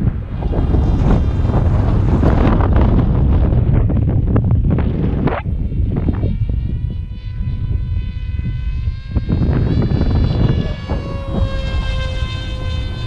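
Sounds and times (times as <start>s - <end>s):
wind rumbling on microphone: 0.0s - 13.0s
model aircraft motor whining: 5.5s - 13.0s.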